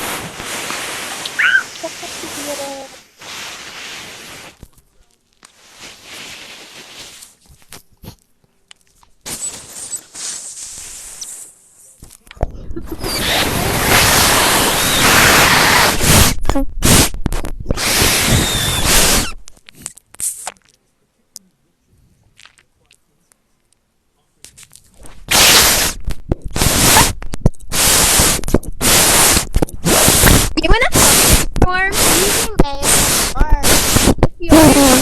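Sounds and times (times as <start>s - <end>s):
harsh static crackling: 0.0s - 7.9s, 9.2s - 12.2s, 12.8s - 20.8s, 24.8s - 35.0s.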